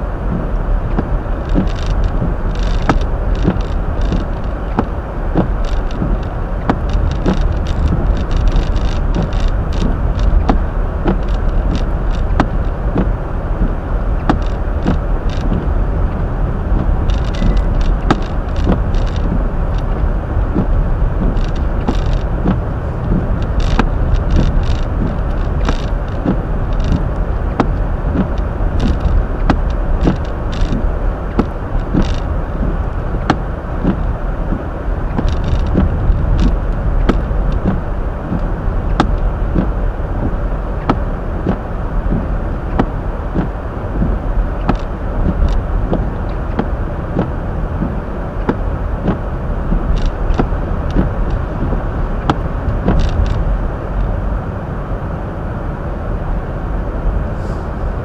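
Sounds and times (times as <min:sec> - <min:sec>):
tyres and engine rumble: 0:00.0 - 0:58.0.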